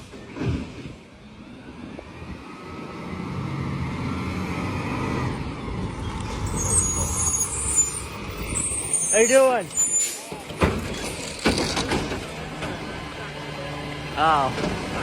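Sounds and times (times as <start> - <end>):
garbage truck diesel engine: 0.0 - 15.0
high brake squeal: 6.0 - 11.4.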